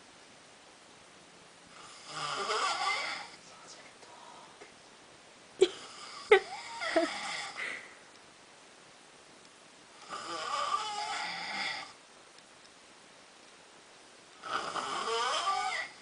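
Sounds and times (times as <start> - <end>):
person snoring: 1.8 - 3.4, 5.6 - 7.9, 10.0 - 12.0, 14.4 - 16.0.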